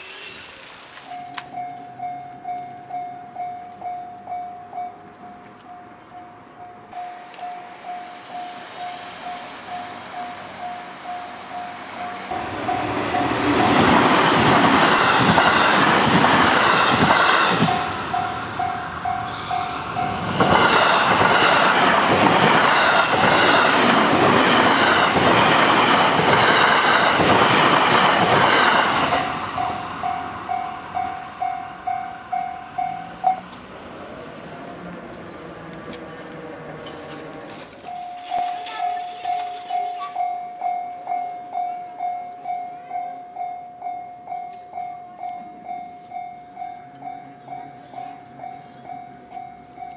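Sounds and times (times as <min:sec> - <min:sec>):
train wheel and rail noise: 0:00.0 - 0:49.9
level crossing warning bell: 0:01.0 - 0:27.0, 0:27.6 - 0:33.6, 0:37.8 - 0:49.9.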